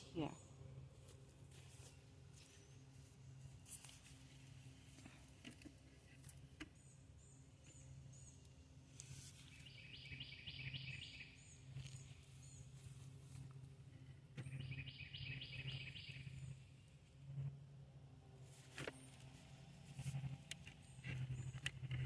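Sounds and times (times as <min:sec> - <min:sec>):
low steady hum: 0:00.0 - 0:22.0
songbird singing: 0:06.6 - 0:13.5, 0:14.4 - 0:16.8.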